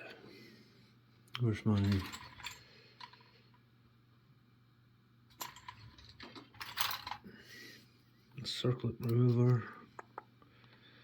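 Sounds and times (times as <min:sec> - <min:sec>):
small metal tools clinking: 0:01.7 - 0:03.2, 0:05.3 - 0:07.2.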